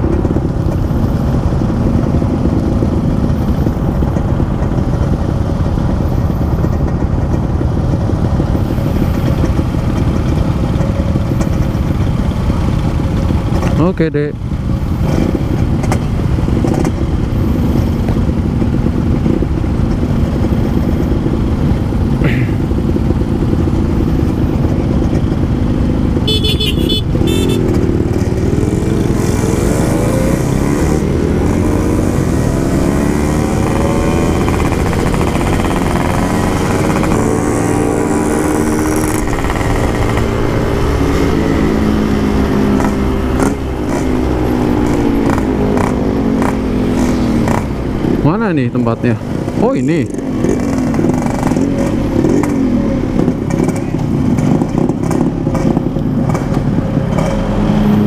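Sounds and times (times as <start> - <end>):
two-stroke motorcycle engine revving: 0.0 - 58.0
horn beeping: 26.2 - 27.9
steady low rumble: 35.4 - 54.3.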